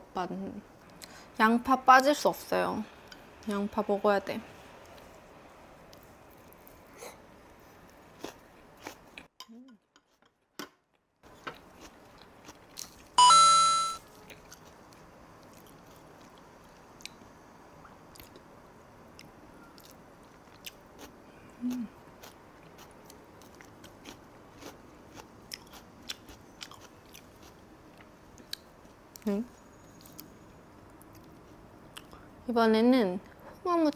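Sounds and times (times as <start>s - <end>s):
person chewing crunchy food: 7.9s - 9.3s, 11.5s - 13.1s, 14.1s - 16.4s, 19.2s - 29.3s
brief loud pitched tone: 13.2s - 14.0s.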